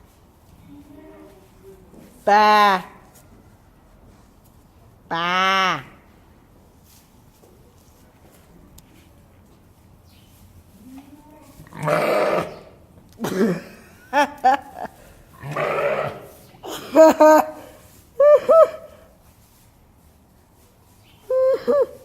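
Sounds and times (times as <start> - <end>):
sheep rough calls: 11.7 - 12.8, 15.3 - 16.4
people laughing: 13.2 - 15.0, 16.6 - 19.0.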